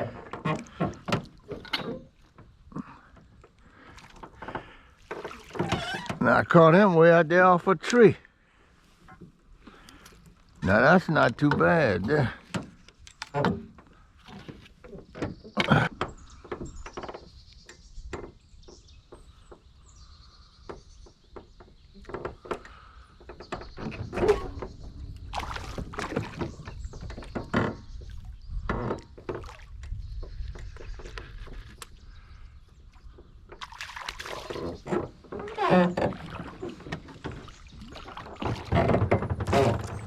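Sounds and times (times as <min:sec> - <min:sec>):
gear knocks and clicks in boat: 0:00.0 - 0:08.2, 0:08.9 - 0:40.0
wind rumbling on microphone: 0:23.5 - 0:33.6.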